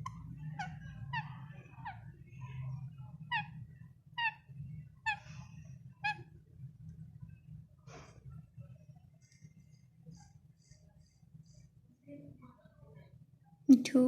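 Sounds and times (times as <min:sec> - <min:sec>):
parrot chirping: 0:00.0 - 0:06.4.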